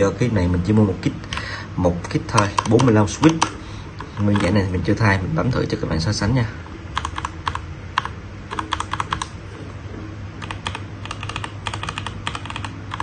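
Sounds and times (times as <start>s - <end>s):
clicky mechanical keyboard keystrokes: 2.3s - 4.6s, 6.9s - 9.3s, 10.4s - 13.0s.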